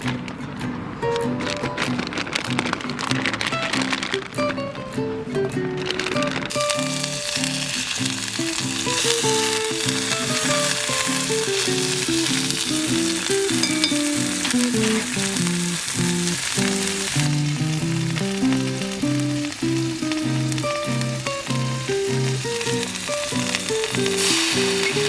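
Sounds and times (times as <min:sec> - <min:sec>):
slow melodic background music: 0:00.0 - 0:25.0
food sizzling in a pan: 0:05.5 - 0:25.0.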